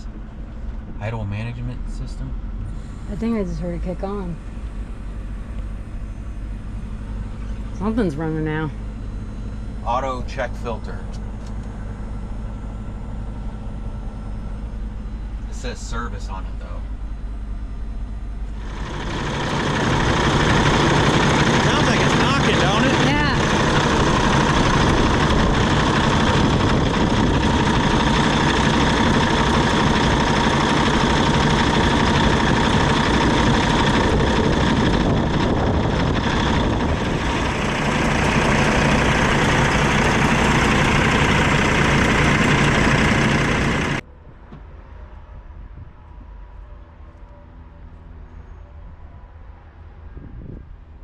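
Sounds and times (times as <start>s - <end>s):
low hum: 0.0s - 51.0s
diesel engine knocking: 18.6s - 44.0s.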